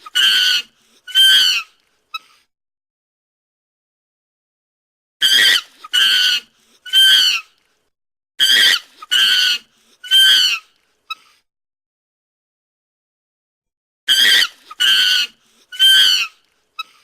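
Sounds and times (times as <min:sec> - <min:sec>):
chimpanzee screaming: 0:00.0 - 0:01.7, 0:05.2 - 0:07.5, 0:08.4 - 0:10.7, 0:14.1 - 0:16.4.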